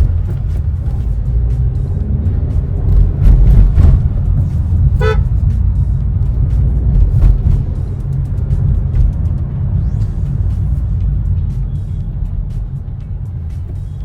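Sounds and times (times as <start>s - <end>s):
road and engine rumble: 0.0s - 14.0s
car horn toot: 4.8s - 5.6s.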